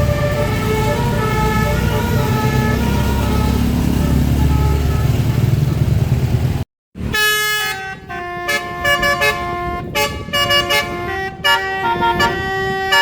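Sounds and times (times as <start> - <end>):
bus engine rumble: 0.0 - 13.0
multi-trumpet air horn melody: 7.1 - 13.0.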